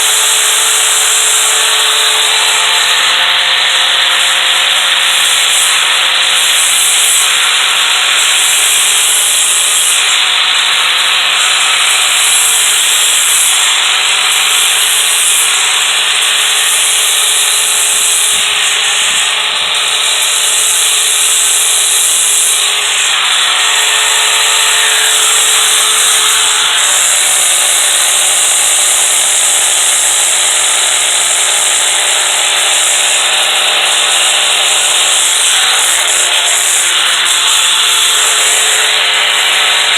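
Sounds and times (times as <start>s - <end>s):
sanding disc scraping steel: 0.0s - 39.9s.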